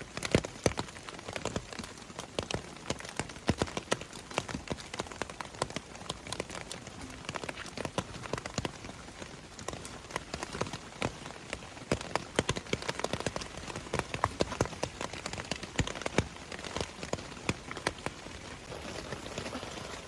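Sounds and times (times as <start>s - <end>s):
large raindrops ticking: 0.0s - 20.0s
light rain hiss: 0.0s - 20.0s.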